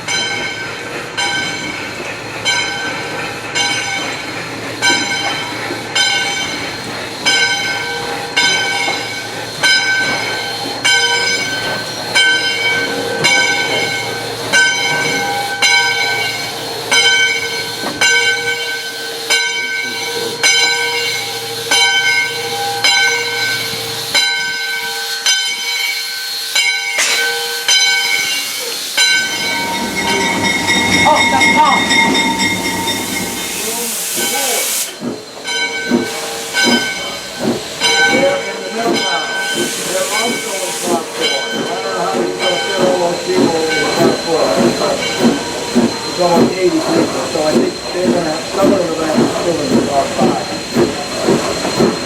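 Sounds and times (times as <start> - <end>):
locomotive bell ringing: 0.0 - 34.6, 35.3 - 52.0
steady tone: 29.0 - 33.8.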